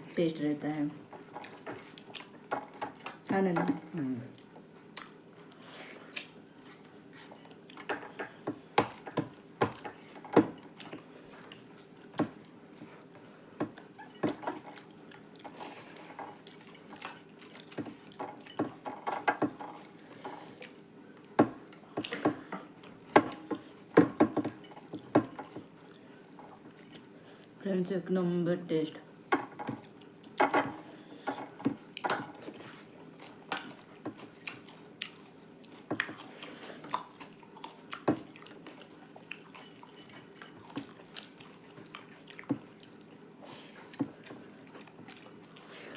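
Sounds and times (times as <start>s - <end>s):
chewing mouth sounds: 31.9s - 39.9s, 40.6s - 45.9s.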